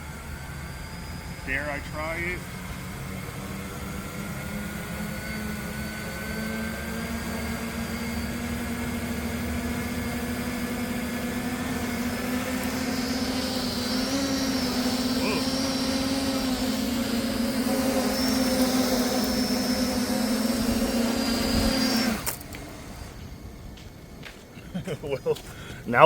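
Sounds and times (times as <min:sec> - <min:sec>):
high-pitched whine: 0:00.0 - 0:24.4
drone motors humming: 0:00.0 - 0:26.0.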